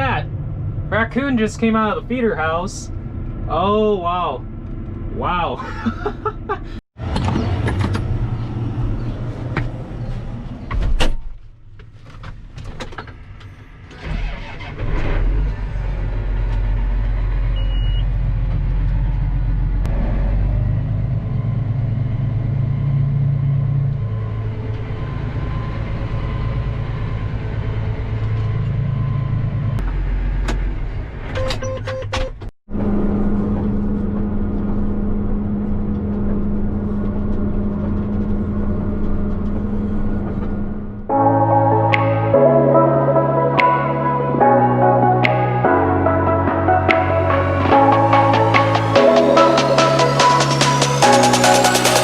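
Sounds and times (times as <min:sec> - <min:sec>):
large diesel engine rumbling: 0:13.2 - 0:31.8, 0:32.7 - 0:52.0.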